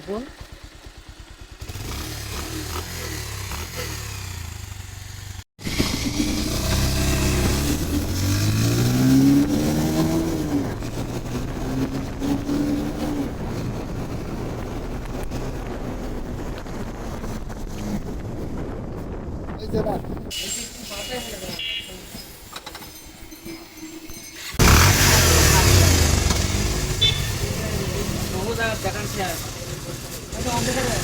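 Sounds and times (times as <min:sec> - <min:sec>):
motorcycle engine idling and revving: 0:00.0 - 0:20.3, 0:24.3 - 0:31.0.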